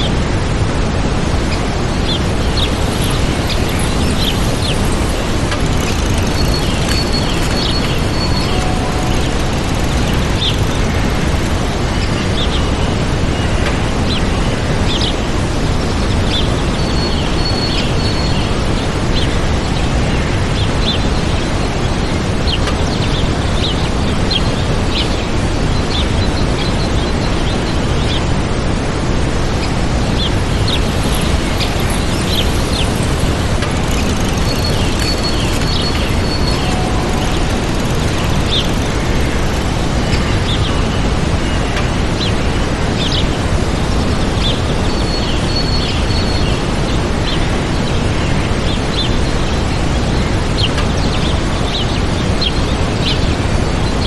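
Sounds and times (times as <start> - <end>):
waterfall rushing: 0.0 - 13.2, 27.2 - 44.9
songbirds chirping: 1.5 - 54.0.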